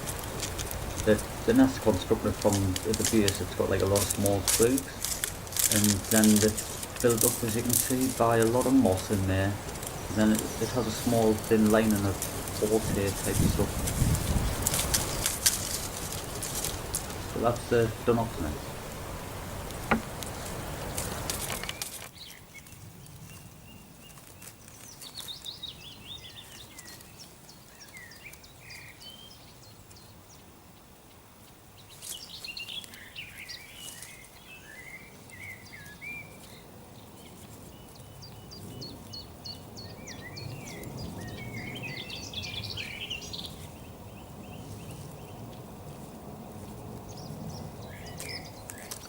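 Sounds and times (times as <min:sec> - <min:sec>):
rustle: 0:00.0 - 0:49.0
songbird warbling: 0:32.1 - 0:45.6.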